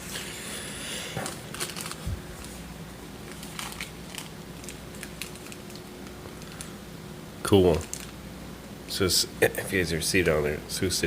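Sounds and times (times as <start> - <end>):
paper and packaging rustling: 1.2 - 6.7, 7.6 - 8.2.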